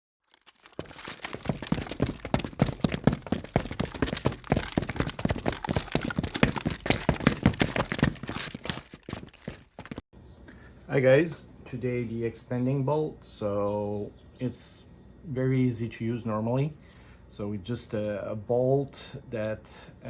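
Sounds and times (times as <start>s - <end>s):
rapid irregular clicking and knocking: 0.6s - 9.1s.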